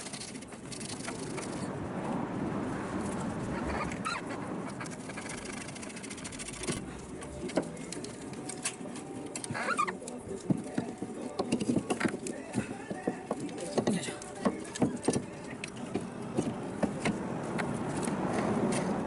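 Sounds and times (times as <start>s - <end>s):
short squeaks: 3.5s - 6.9s, 9.4s - 10.0s.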